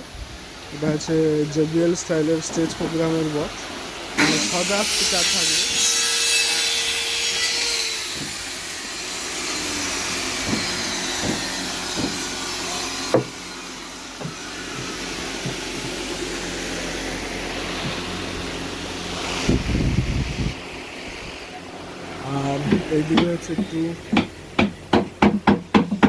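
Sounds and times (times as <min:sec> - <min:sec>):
power saw whining: 0:04.2 - 0:20.3
scattered knocks: 0:10.4 - 0:12.3, 0:14.2 - 0:16.0, 0:22.6 - 0:26.0.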